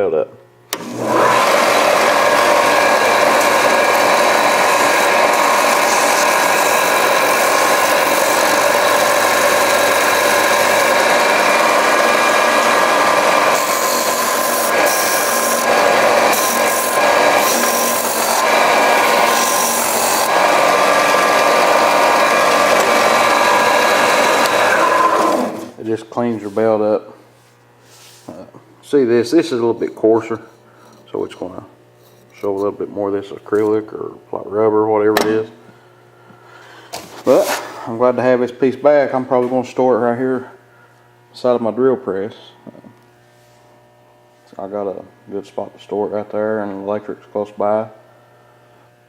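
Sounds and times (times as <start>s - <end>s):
belt sander running: 0.7s - 32.6s
rubber block rubbing on belt: 27.4s - 28.4s.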